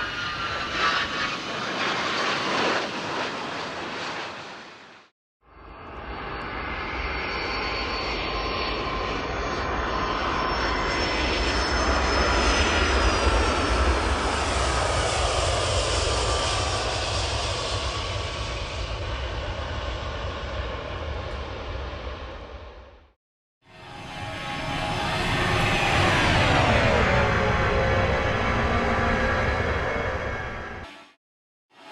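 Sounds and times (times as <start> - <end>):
aircraft engine flying past: 0.0 - 23.0, 23.7 - 31.0
high whine dropping in pitch: 23.8 - 31.2.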